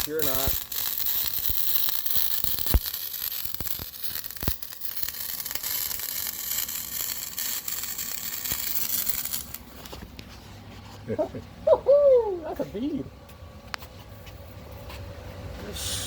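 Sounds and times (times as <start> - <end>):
welder arc crackling: 0.0 - 10.0.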